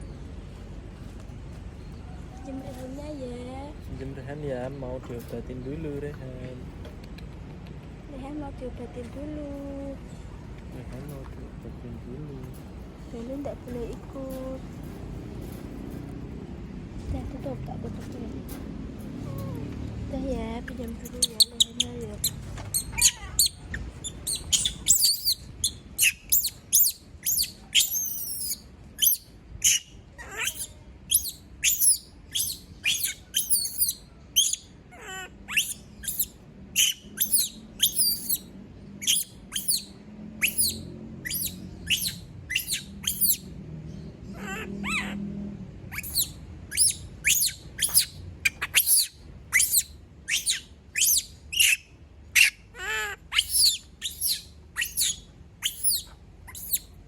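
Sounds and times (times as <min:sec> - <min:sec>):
monkey screaming: 0:22.7 - 0:38.4, 0:39.0 - 0:43.4, 0:44.4 - 0:45.2, 0:45.9 - 0:56.9.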